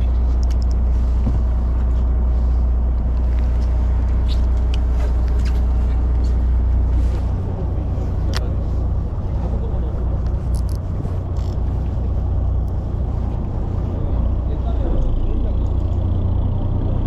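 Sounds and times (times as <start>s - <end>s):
boat engine rumble: 0.0s - 17.0s
faint clicks: 0.2s - 0.8s.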